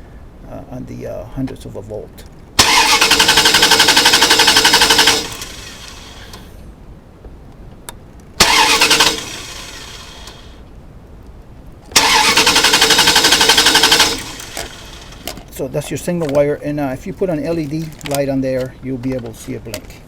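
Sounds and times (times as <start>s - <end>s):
engine cranking on starter motor: 2.6s - 6.6s, 8.4s - 10.6s, 11.9s - 15.5s.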